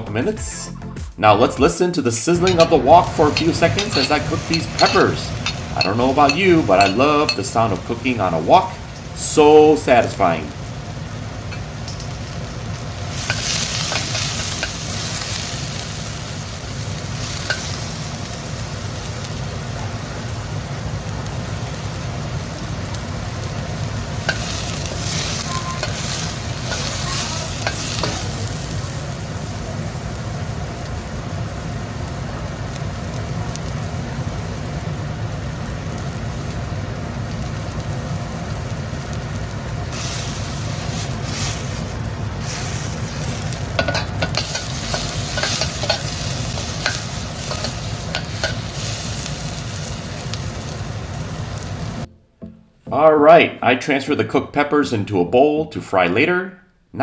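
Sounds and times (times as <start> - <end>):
peppers sizzling in oil: 1.7 - 52.1.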